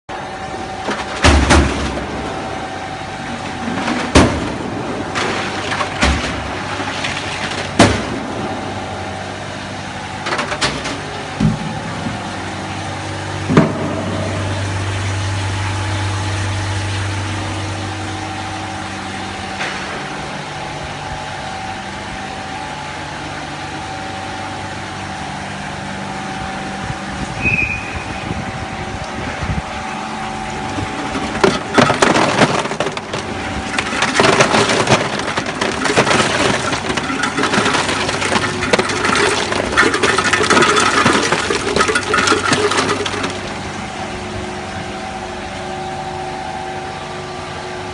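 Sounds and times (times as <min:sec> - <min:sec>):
ice machine humming: 0:00.1 - 0:47.9
ice cubes clattering: 0:30.9 - 0:43.6.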